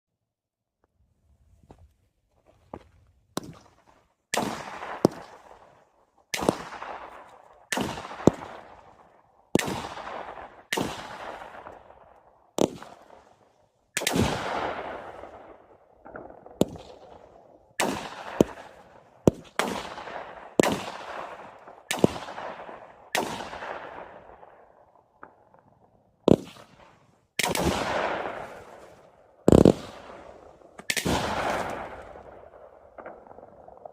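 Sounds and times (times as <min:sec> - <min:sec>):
fireworks bangs: 0:27.4 - 0:33.6.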